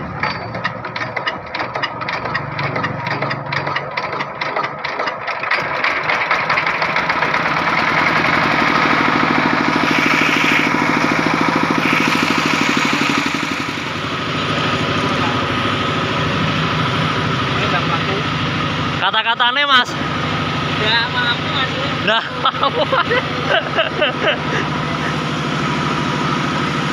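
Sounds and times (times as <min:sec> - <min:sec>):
engine running: 0:00.0 - 0:26.9.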